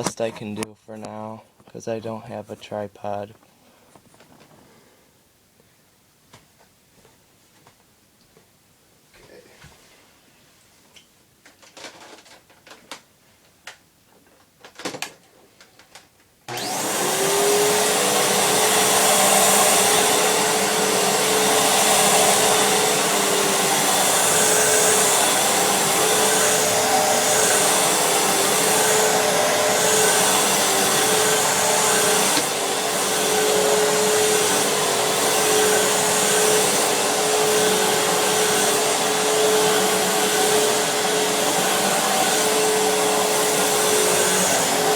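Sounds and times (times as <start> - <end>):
upright vacuum cleaner running: 16.5 - 44.9.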